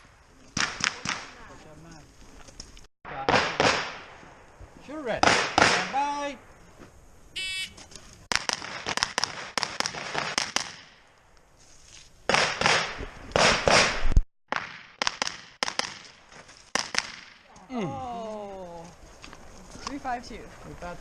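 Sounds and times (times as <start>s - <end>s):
rapid rifle fire: 3.2s - 4.0s, 5.2s - 5.9s, 8.3s - 10.9s, 12.3s - 16.1s, 16.7s - 17.4s.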